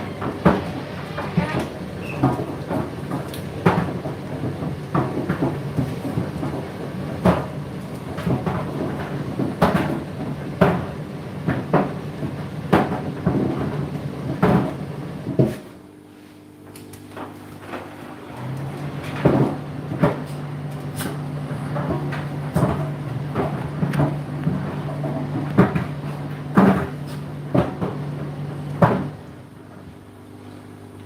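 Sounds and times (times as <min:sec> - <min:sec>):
washing machine motor hum: 0:00.0 - 0:31.0
laundry thudding in drum: 0:18.4 - 0:29.3.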